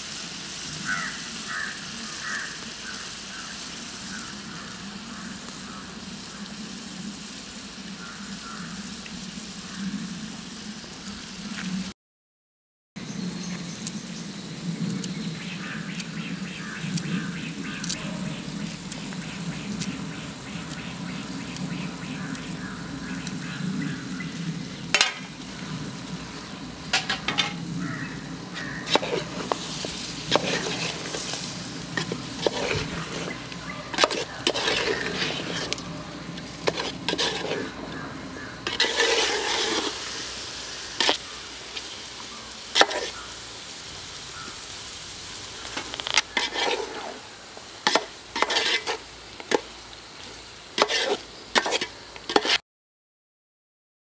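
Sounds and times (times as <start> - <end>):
food sizzling in a pan: 0.0 - 11.9, 13.1 - 52.6
spoon scraping and clinking on pan: 26.9 - 27.6, 28.6 - 35.8, 36.6 - 37.7, 47.9 - 49.6, 50.8 - 52.6.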